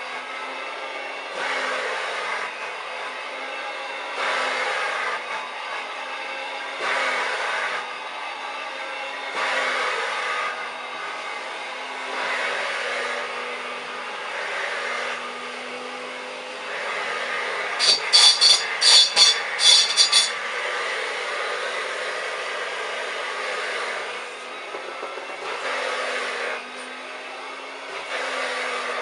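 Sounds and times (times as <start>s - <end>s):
hand vacuum cleaner running: 0.0s - 29.0s.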